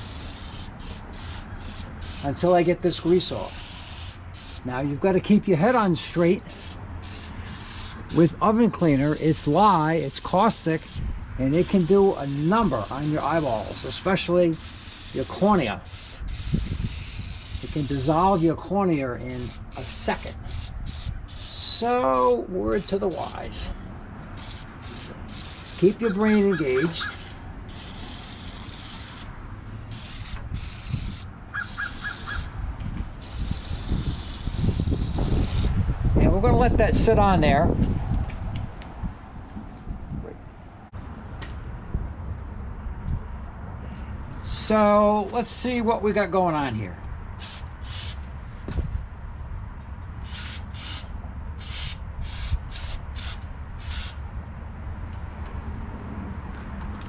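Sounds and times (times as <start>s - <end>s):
aerosol can spraying: 0.0s - 4.6s, 6.5s - 18.6s, 19.3s - 23.4s, 24.4s - 29.3s, 29.9s - 32.5s, 33.2s - 35.7s, 47.4s - 48.2s, 50.3s - 54.2s.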